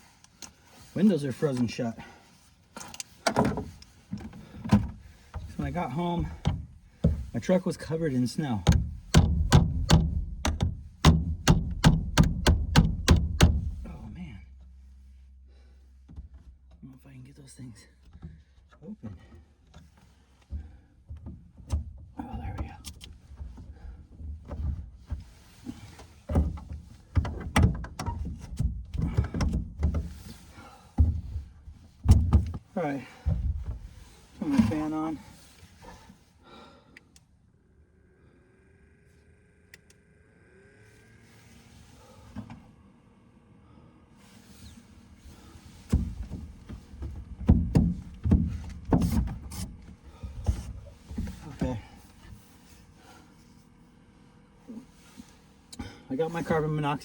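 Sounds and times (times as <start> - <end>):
sharp clicks and knocks: 2.8 - 7.4, 8.6 - 14.0, 45.9 - 51.7
heavy thumps: 3.4 - 14.3, 26.3 - 32.6, 33.2 - 35.2, 45.2 - 52.3.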